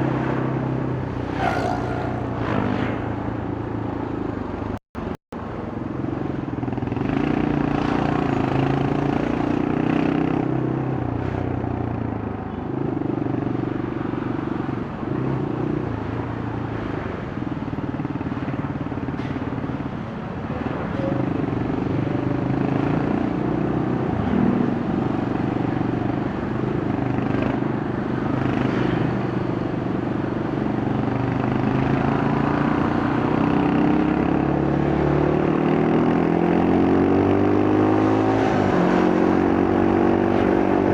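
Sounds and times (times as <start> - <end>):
road and traffic noise: 0.0 - 40.9
motorcycle engine revving: 1.2 - 3.4.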